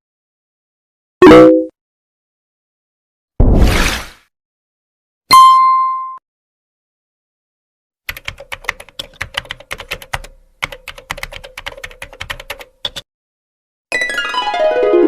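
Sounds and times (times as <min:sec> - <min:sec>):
computer keyboard key clicks: 0:08.1 - 0:13.0.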